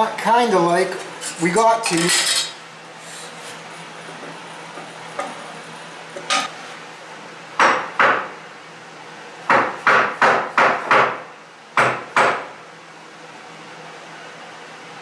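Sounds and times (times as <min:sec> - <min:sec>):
mallet knocking on plywood panels: 0:07.6 - 0:08.3, 0:09.5 - 0:11.2, 0:11.8 - 0:12.5.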